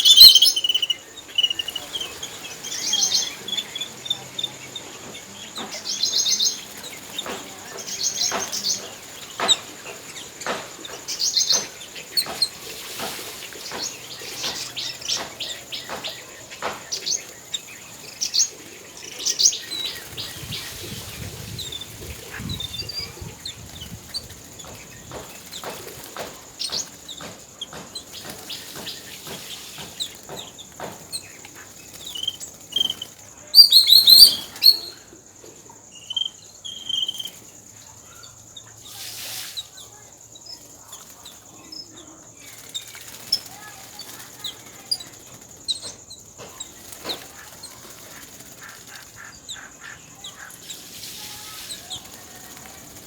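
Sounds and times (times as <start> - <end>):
squeaky high bird calls: 0.0 - 4.7, 32.0 - 35.1, 36.0 - 37.4, 45.7 - 52.5
babblers calling and chattering: 0.0 - 53.0.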